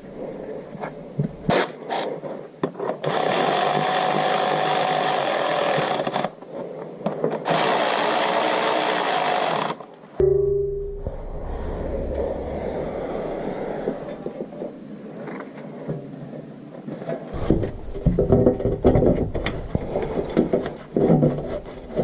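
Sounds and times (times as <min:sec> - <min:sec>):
low rumble: 0:10.2 - 0:14.6, 0:17.4 - 0:22.0.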